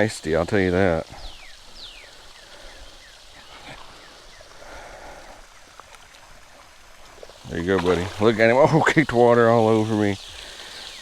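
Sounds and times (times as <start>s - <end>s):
bird singing whistled notes: 1.2s - 4.5s, 9.8s - 11.0s.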